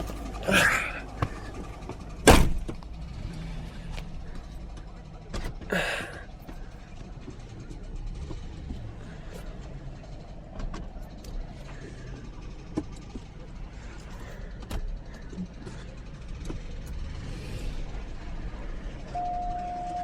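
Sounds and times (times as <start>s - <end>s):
car engine idling with ticking: 0.0s - 20.0s
loud thump: 2.2s - 2.8s.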